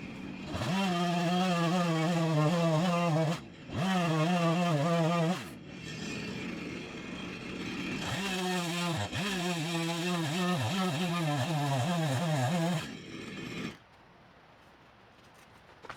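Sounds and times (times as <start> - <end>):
chainsaw revving: 0.4 - 5.5, 7.6 - 13.8.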